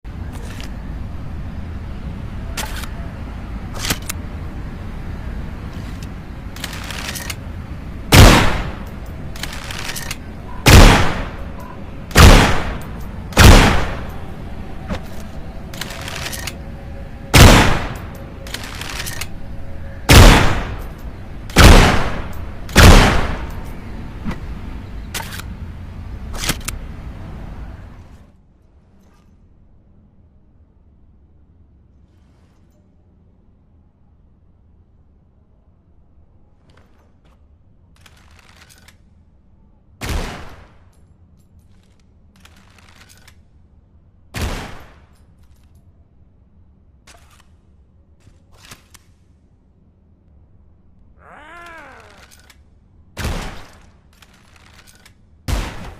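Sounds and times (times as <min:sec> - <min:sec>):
clicks and rattles handling gun: 0:05.7 - 0:07.4, 0:08.8 - 0:10.3, 0:15.0 - 0:16.7, 0:18.0 - 0:19.5, 0:36.7 - 0:39.2, 0:40.8 - 0:43.5, 0:45.1 - 0:45.9, 0:47.0 - 0:49.3, 0:52.0 - 0:52.7, 0:53.6 - 0:55.3
loud shots with echo: 0:08.1 - 0:08.8, 0:10.6 - 0:11.4, 0:12.1 - 0:12.8, 0:13.4 - 0:14.1, 0:17.3 - 0:18.0, 0:20.1 - 0:20.8, 0:21.6 - 0:23.5.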